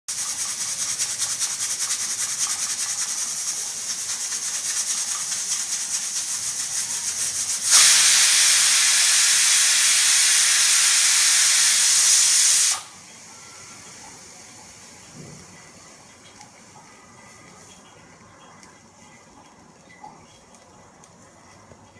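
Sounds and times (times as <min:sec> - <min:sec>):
pressure cooker whistling: 0:06.7 - 0:14.0.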